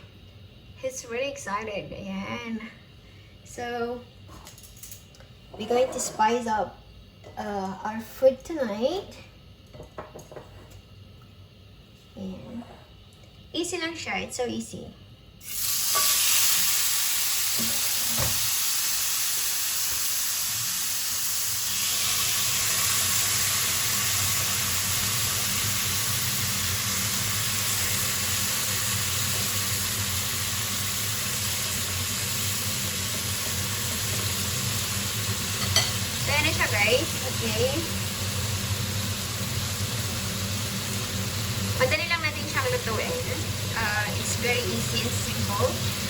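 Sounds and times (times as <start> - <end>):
meat sizzling on a grill: 15.4 - 46.0.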